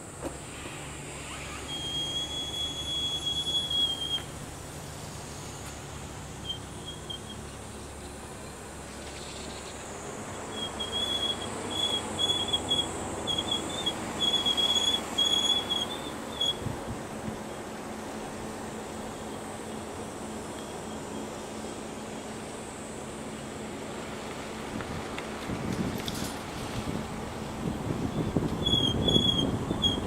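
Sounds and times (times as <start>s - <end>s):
car rolling noise: 0.0s - 30.0s
car brakes squealing: 0.2s - 4.6s, 5.3s - 8.0s, 8.9s - 16.8s, 19.1s - 21.7s, 27.9s - 30.0s.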